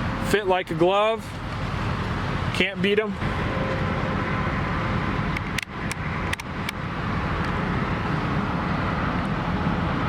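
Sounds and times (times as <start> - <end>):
low engine rumble: 0.0 - 10.0.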